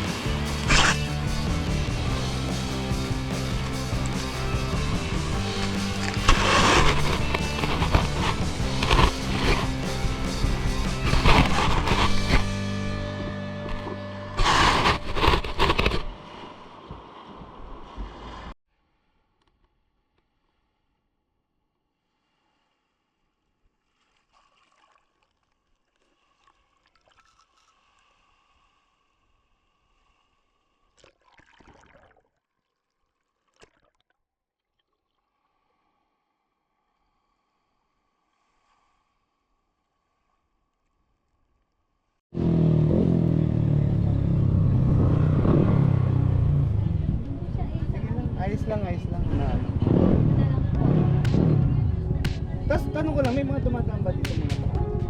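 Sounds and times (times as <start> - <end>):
vehicle engine running: 0.0 - 16.2, 42.4 - 55.0.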